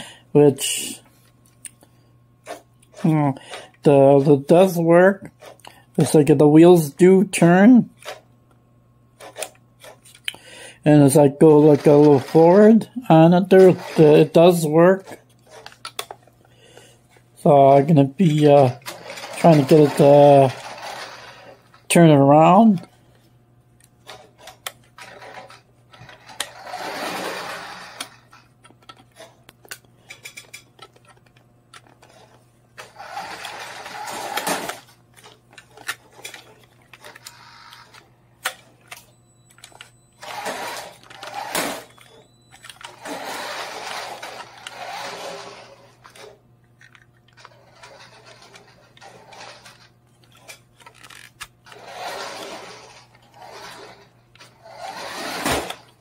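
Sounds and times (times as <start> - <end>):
toy car motor whirring: 11.4 - 16.1, 18.3 - 21.8, 24.1 - 29.3, 31.8 - 35.0, 35.6 - 38.0, 39.5 - 56.0.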